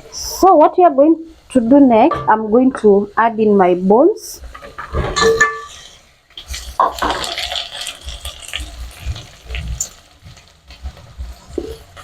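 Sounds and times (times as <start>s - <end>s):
food hissing and splashing in a pot: 4.2s - 12.0s.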